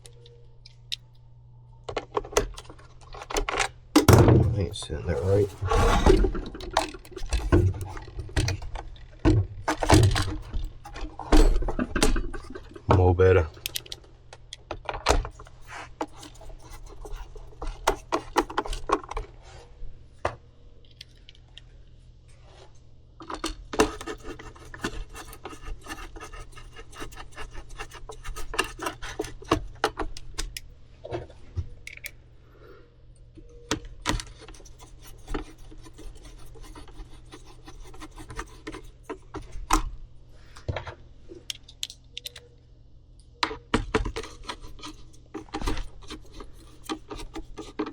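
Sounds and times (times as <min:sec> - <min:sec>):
faint low hum: 0:00.0 - 0:23.3.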